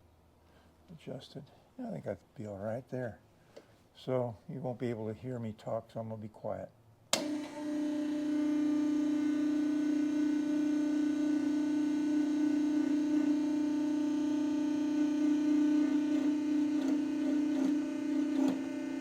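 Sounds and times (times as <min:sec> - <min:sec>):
hydraulic pump humming: 0:07.1 - 0:19.0.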